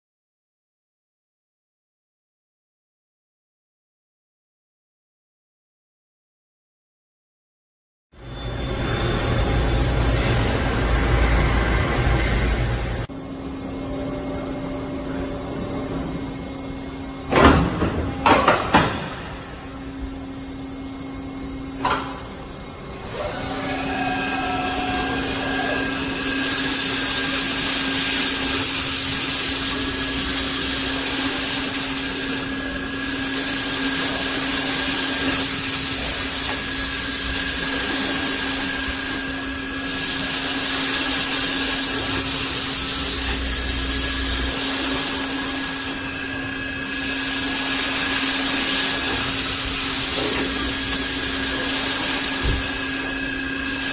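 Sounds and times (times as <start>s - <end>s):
machine motor hum with whine: 8.2s - 53.9s
loud hissing drilling: 22.7s - 53.9s.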